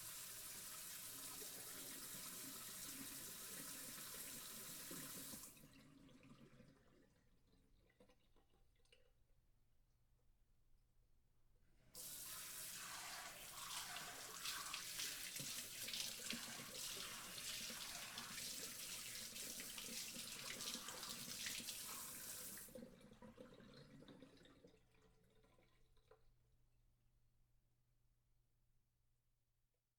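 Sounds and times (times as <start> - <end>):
soft wash of water: 11.9 - 26.1.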